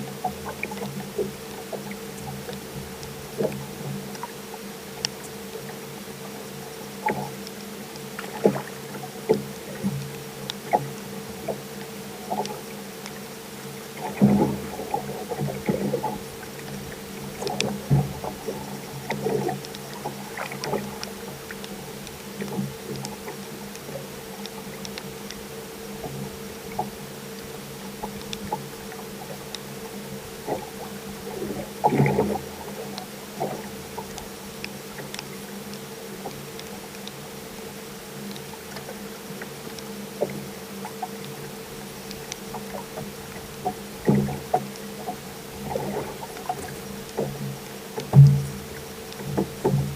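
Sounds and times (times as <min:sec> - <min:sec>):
boat motor hum: 0:00.0 - 0:49.9
small clicks and taps: 0:07.0 - 0:13.2, 0:14.0 - 0:25.4, 0:26.0 - 0:29.7, 0:30.5 - 0:37.3, 0:38.2 - 0:49.9
water slapping against hull: 0:07.0 - 0:37.4, 0:38.0 - 0:49.9
knocks on boat: 0:48.1 - 0:48.5.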